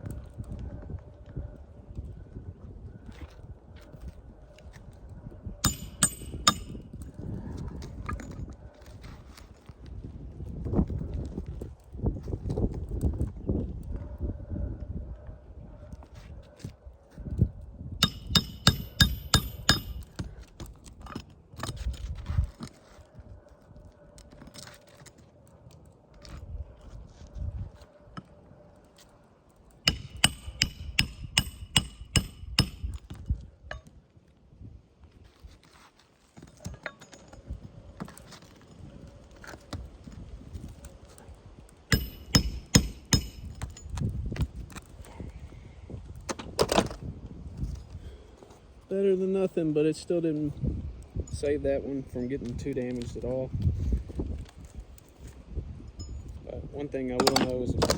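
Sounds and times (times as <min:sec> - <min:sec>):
metal tool tapping on shingle roof: 0:05.6 - 0:07.0, 0:18.0 - 0:21.9, 0:29.8 - 0:33.9, 0:41.9 - 0:44.8, 0:57.2 - 0:57.9.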